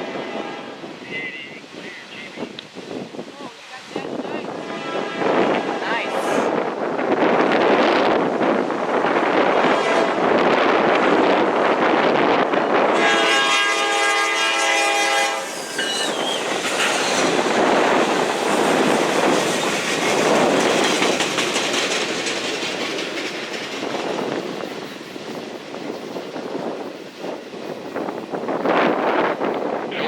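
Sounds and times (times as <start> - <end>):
locomotive horn: 0.0 - 0.8, 4.6 - 6.5, 9.6 - 10.3, 12.9 - 15.6
train rumble and wheel clatter: 0.0 - 30.0.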